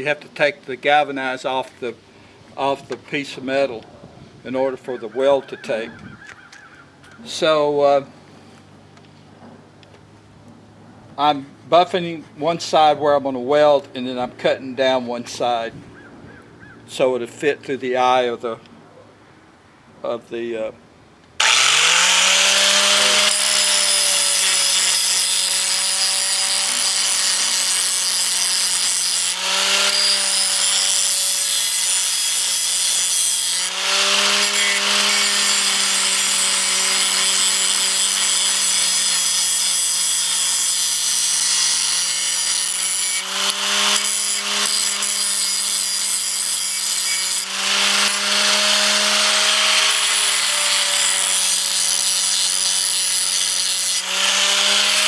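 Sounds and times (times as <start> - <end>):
electric grinder grinding metal: 21.4 - 55.0.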